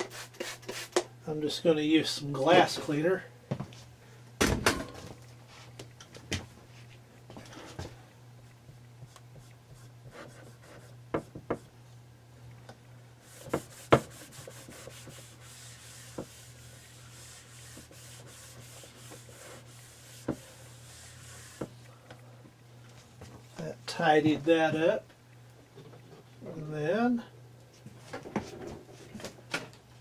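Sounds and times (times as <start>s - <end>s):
cloth rubbing glass: 13.2s - 21.7s.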